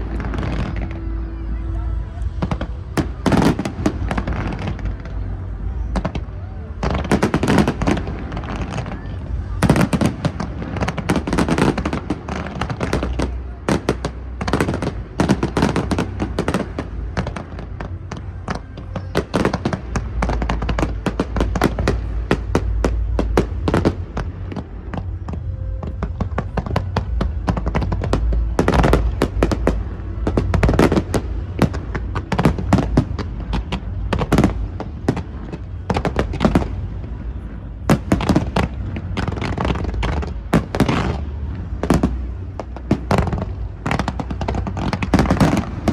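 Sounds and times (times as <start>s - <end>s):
fireworks bangs and crackles: 0.0s - 45.9s
low rumble: 0.0s - 45.9s.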